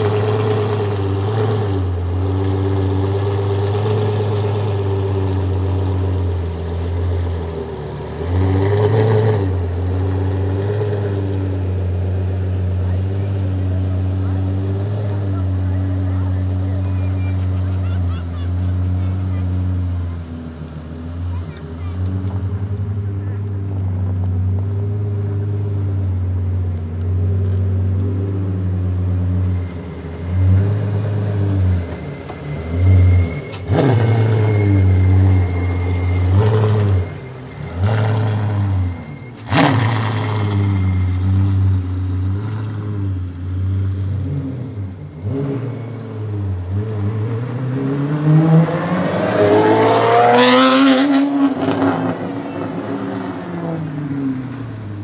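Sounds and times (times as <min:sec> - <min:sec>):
car engine idling and revving: 0:00.0 - 0:55.0.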